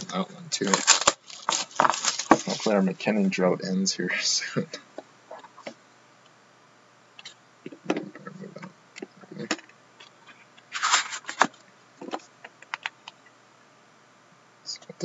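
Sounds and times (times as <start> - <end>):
packaging rustling scrape: 0.6 - 2.9, 10.3 - 12.2.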